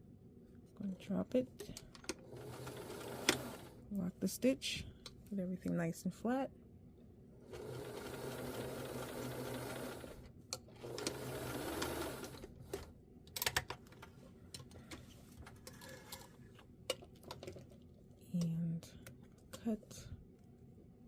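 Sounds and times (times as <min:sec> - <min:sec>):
sewing machine stitching: 0:02.2 - 0:03.8, 0:07.5 - 0:12.8.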